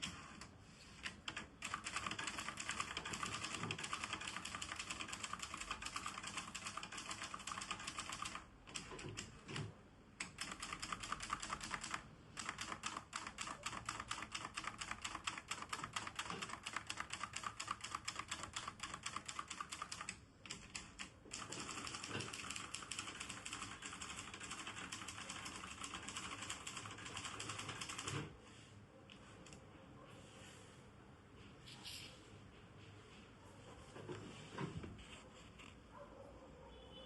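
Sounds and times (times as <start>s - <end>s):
typewriter keystroke clacks: 1.3s - 28.3s.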